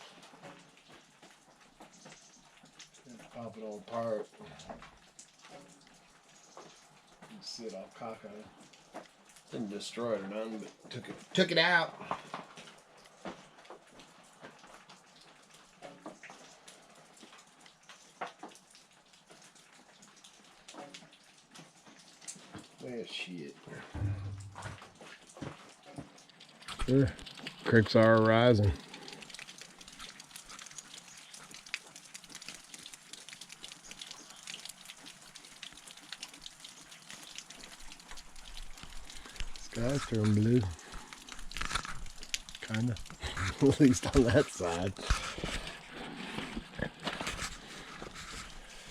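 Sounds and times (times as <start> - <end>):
water dripping and pattering: 0.0 - 48.9
small splashes: 10.6 - 48.9
creek water rushing: 38.8 - 48.9.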